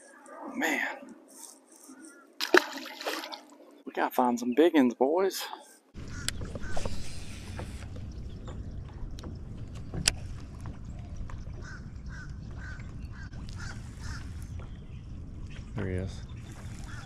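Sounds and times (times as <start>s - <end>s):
low rumble: 6.0s - 17.0s
ducks quacking: 11.6s - 14.4s.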